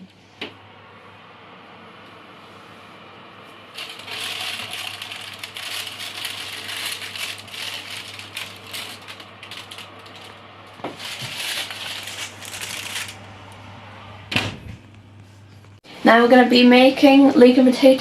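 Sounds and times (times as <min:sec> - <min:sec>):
steady low hum: 0:00.0 - 0:16.1
kitchen items rattling and rustling: 0:03.8 - 0:13.4.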